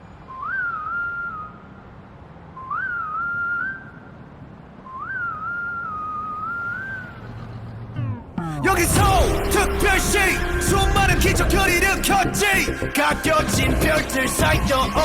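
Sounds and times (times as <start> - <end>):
person whistling: 0.3 - 1.7, 2.6 - 4.0, 4.9 - 7.2.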